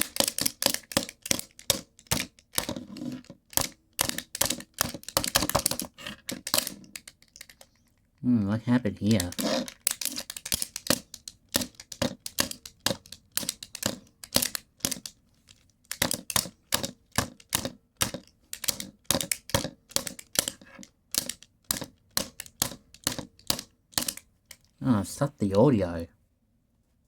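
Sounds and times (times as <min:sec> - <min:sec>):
plastic remote being bashed apart: 0:00.0 - 0:07.0.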